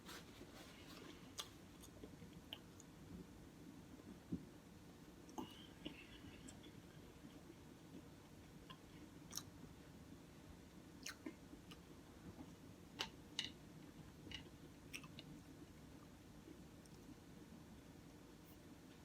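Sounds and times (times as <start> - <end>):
quiet chewing of sandwich: 0.0 - 3.3, 5.2 - 9.8, 10.7 - 12.7, 14.3 - 17.3.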